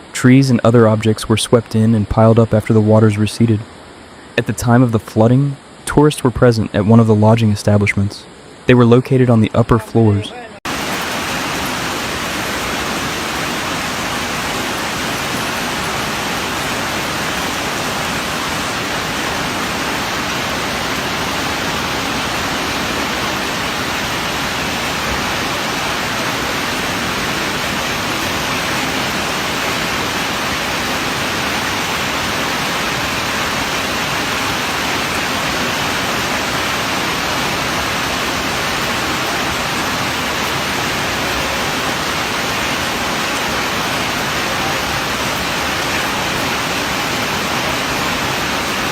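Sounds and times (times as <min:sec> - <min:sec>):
rushing water: 0:00.0 - 0:48.9.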